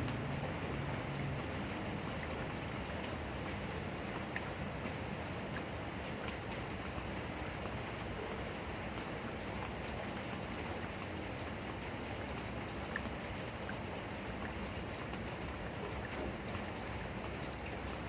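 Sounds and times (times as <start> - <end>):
heavy rain falling: 0.0 - 5.2.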